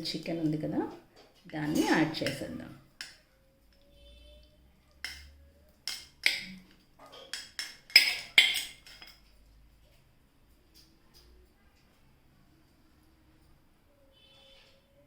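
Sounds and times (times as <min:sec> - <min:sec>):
metal spoon clinking against bowl: 0:01.7 - 0:03.8, 0:05.0 - 0:09.2.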